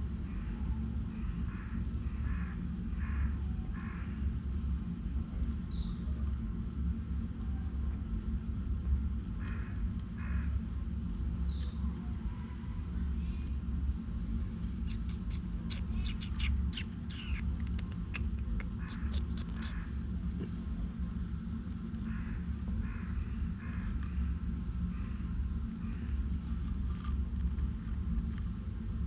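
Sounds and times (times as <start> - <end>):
steady low rumble: 0.0 - 29.0
bird chirping: 14.8 - 17.9.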